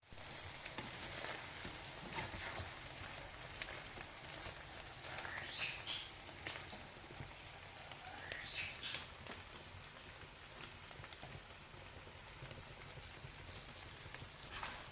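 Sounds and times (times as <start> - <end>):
food sizzling in a frying pan: 0.0 - 14.9.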